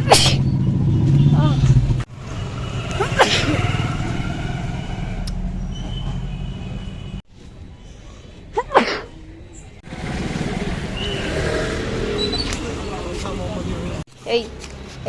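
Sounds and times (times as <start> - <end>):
person sneezing: 0.0 - 0.4, 3.0 - 3.6, 8.6 - 9.2
low rumble of road traffic: 0.0 - 15.0.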